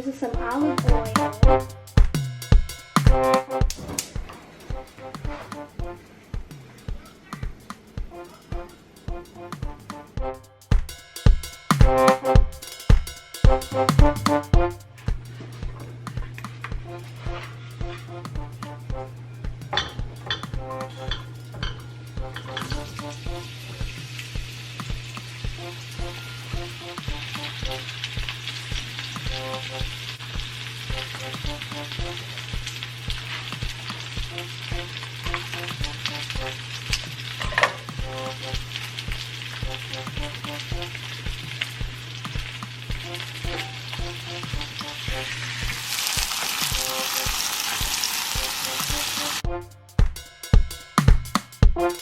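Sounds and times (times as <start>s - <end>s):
food frying in a pan: 19.7s - 49.4s.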